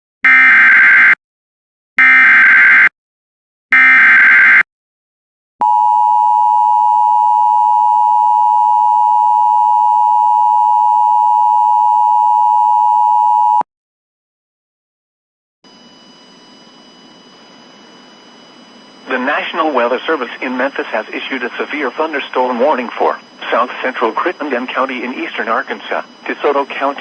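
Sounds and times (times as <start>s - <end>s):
steady single-pitch alert tone: 5.6s - 13.6s.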